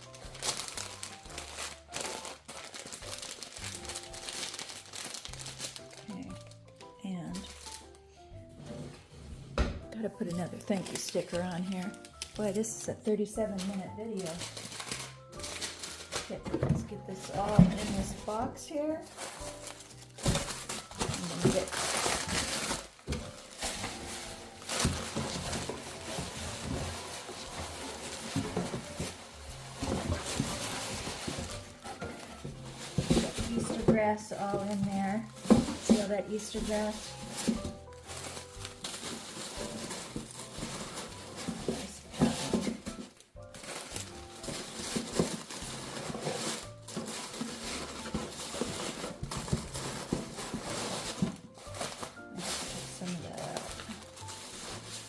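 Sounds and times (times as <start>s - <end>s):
faint background music: 0.0s - 55.0s
easter grass rustling and crinkling: 19.0s - 55.0s.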